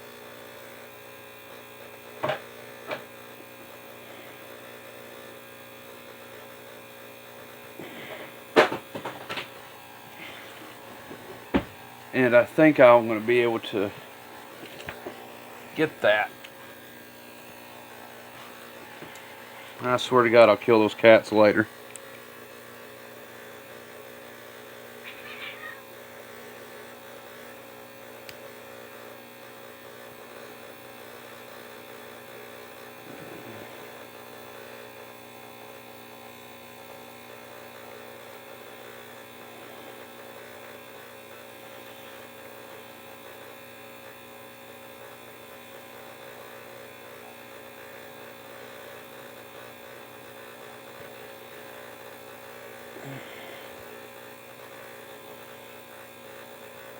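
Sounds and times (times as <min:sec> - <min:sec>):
electrical mains hum: 0:00.0 - 0:56.9
faint cat meows: 0:25.0 - 0:25.9.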